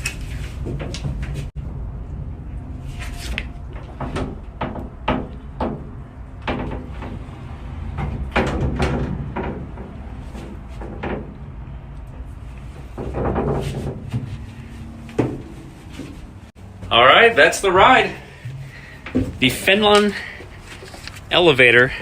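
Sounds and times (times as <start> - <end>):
steady low rumble: 0.6 - 22.0
funicular car clunks and rattles: 3.4 - 17.0, 17.8 - 20.6.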